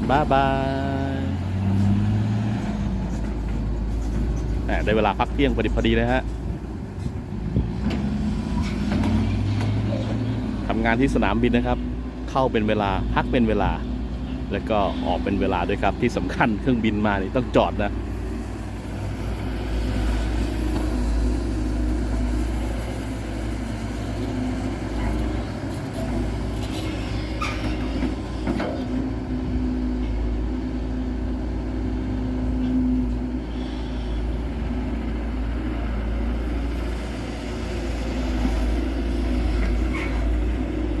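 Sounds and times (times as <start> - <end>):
diesel engine rumbling: 0.0 - 41.0.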